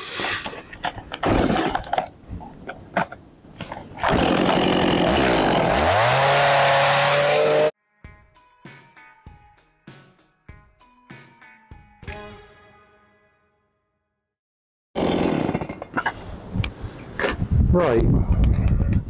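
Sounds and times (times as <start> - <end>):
chainsaw cutting wood: 1.2 - 2.0, 4.0 - 7.7, 15.0 - 16.1.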